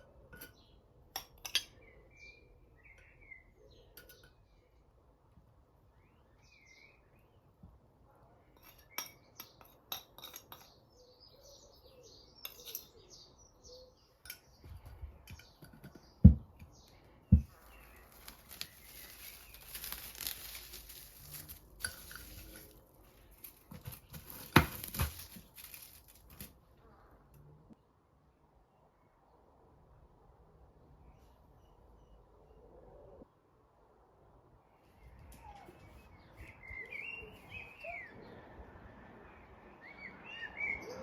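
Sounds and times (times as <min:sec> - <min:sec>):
birds chirping: 0:10.6 - 0:25.6, 0:34.8 - 0:38.6, 0:39.2 - 0:41.0
dishes and utensils clinking: 0:21.3 - 0:22.8.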